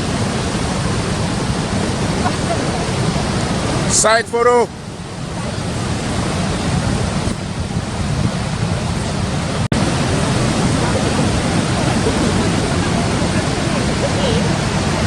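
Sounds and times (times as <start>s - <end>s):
waterfall roaring: 0.0s - 15.0s
wind on microphone: 0.0s - 15.0s.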